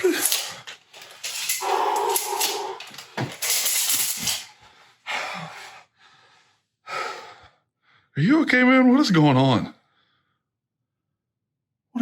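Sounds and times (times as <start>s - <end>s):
heavy breathy panting: 1.5s - 3.2s, 4.5s - 8.1s.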